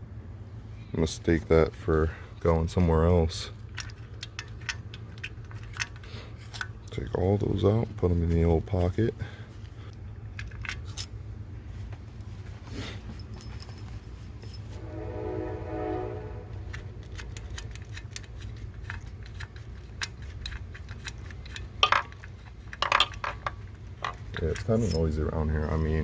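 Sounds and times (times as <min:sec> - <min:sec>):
steady low rumble: 0:00.0 - 0:26.0
distant train horn: 0:14.7 - 0:17.0.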